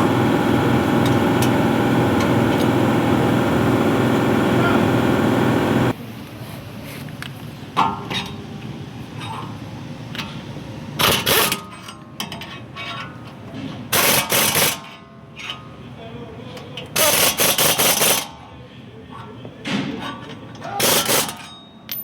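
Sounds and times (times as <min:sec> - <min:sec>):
loud steady machine noise: 0:00.0 - 0:06.0.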